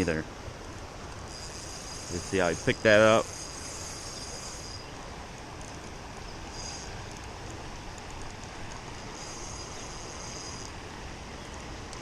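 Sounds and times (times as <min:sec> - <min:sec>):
insect trilling: 0:00.0 - 0:00.2, 0:01.3 - 0:05.0, 0:06.2 - 0:07.0, 0:09.1 - 0:10.8.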